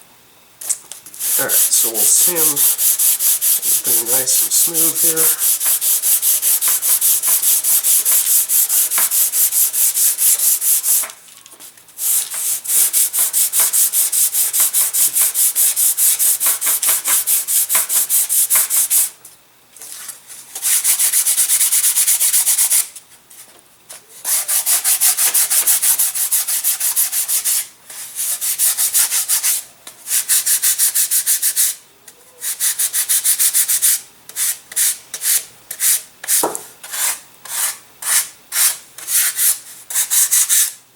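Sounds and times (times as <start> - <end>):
sandpaper rubbing back and forth: 1.2 - 11.0, 24.3 - 29.6.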